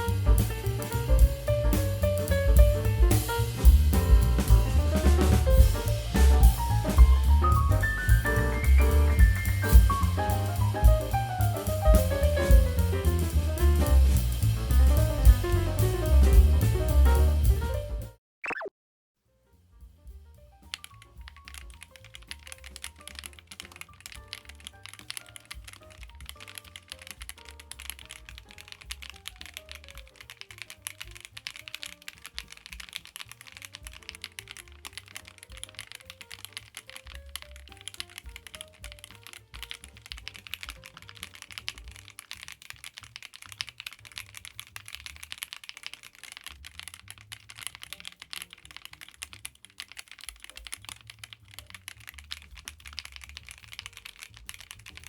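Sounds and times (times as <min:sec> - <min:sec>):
background music with bass: 0:00.0 - 0:18.2
mechanical keyboard typing: 0:20.7 - 0:55.0.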